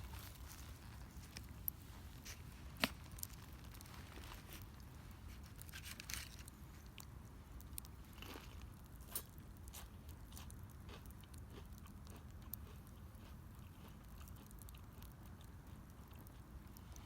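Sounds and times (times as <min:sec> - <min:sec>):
wood fire crackling: 0:00.0 - 0:09.7
faint low rumble: 0:00.0 - 0:17.0.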